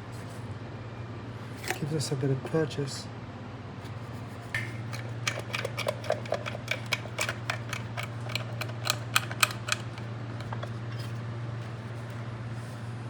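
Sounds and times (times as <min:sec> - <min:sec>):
steady low hum: 0:00.0 - 0:13.0
hand tool clicking on metal: 0:04.9 - 0:10.6.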